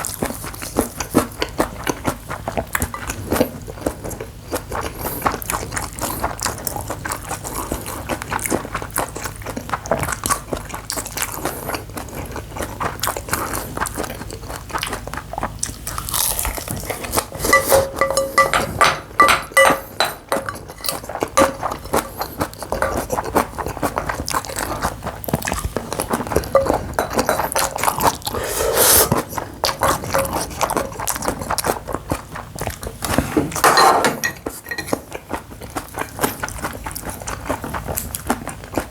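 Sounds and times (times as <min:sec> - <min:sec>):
person chewing: 0:00.0 - 0:33.7, 0:34.3 - 0:38.9
spoon clinking against bowl: 0:17.3 - 0:23.0, 0:26.5 - 0:27.8, 0:33.7 - 0:35.0.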